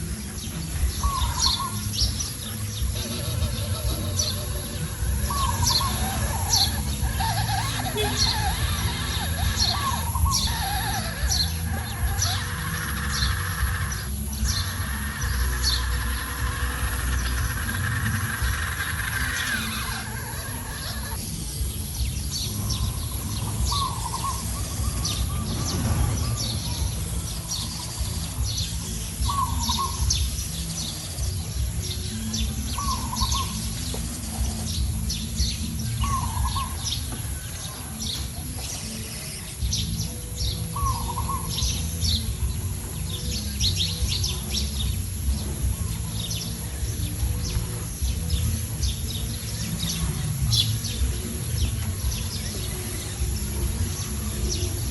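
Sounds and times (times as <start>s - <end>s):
steady low rumble: 0.0s - 38.4s
birds chirping: 0.0s - 54.9s.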